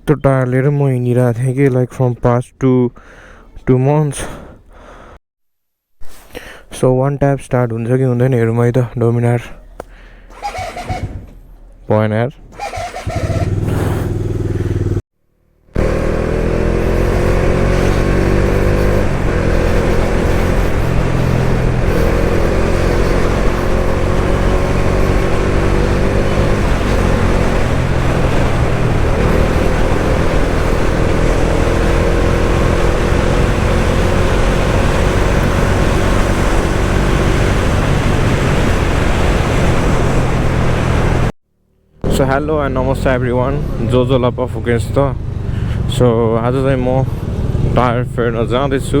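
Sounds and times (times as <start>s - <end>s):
motorcycle engine revving through gears: 10.3s - 49.0s.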